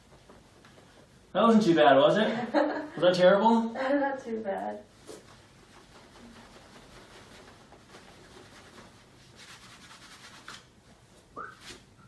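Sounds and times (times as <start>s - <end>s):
rustling on padded table: 0.0s - 1.3s, 4.9s - 11.9s.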